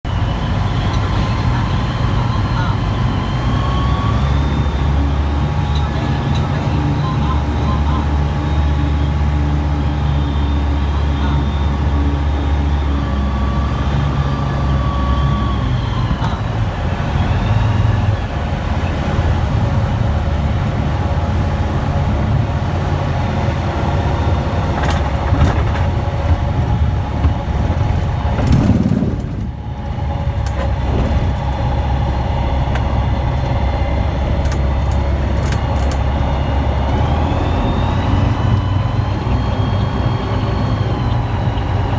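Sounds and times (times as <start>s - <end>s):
light aircraft engine droning: 0.0s - 41.9s
sharp knocks and rattles: 24.7s - 32.0s.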